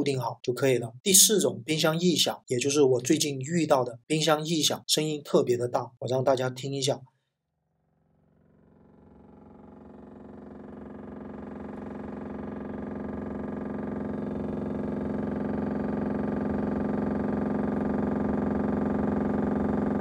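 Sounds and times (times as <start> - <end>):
refrigerator fan rattling buzz: 8.5 - 20.0.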